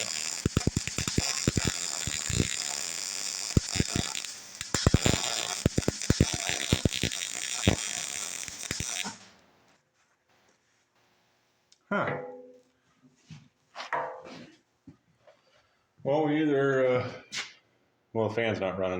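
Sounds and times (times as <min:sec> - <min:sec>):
sharp welding pops: 0:00.0 - 0:09.6
arc welding crackling sizzle: 0:00.0 - 0:09.8.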